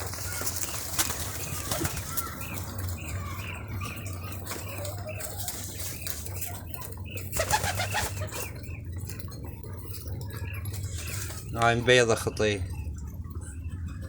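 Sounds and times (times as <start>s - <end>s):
wing flaps and scuffles: 0.0s - 2.7s
pigeons cooing: 0.0s - 14.0s.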